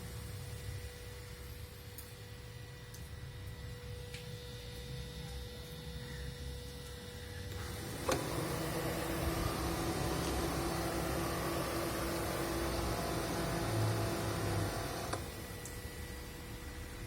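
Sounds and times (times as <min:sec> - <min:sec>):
air conditioning compressor droning: 0:00.0 - 0:17.0
compressor click: 0:07.5 - 0:15.8.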